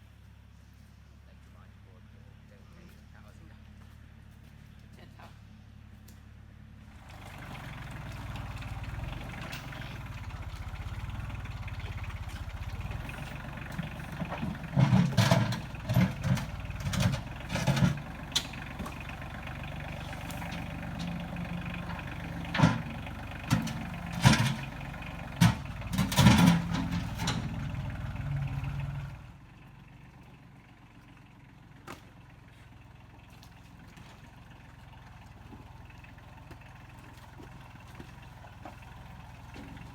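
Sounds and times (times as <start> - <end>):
tractor engine running: 3.0 - 39.9
loud knocks and clatter: 10.6 - 19.1, 21.9 - 27.8.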